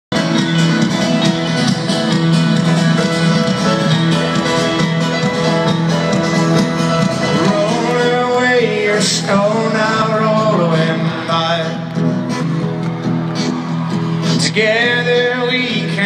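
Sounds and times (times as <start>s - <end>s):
banjo: 0.1s - 12.9s
plucked acoustic guitar: 0.1s - 16.0s.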